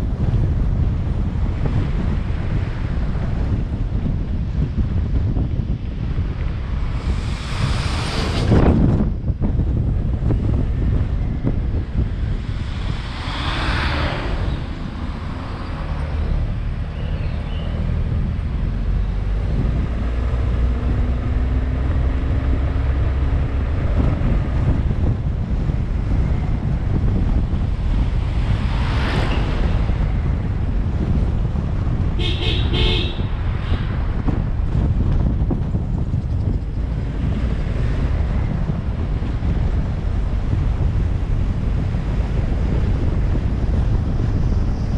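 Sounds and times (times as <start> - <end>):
engine and road rumble: 0.0 - 44.9
short horn toots: 32.2 - 33.8.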